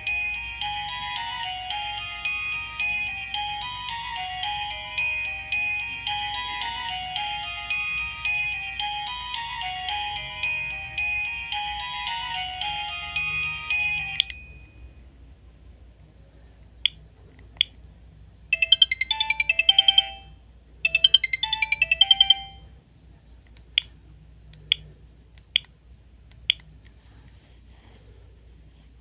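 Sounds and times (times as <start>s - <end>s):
phone melody: 0.0s - 15.2s, 18.5s - 22.8s.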